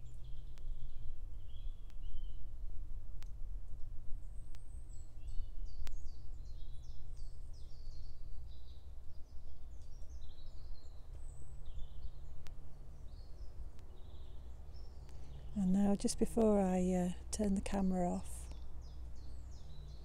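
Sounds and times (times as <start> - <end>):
steady low rumble: 8.4 - 20.0
birds chirping: 9.8 - 20.0
faint clicks: 12.4 - 12.6, 15.0 - 15.5.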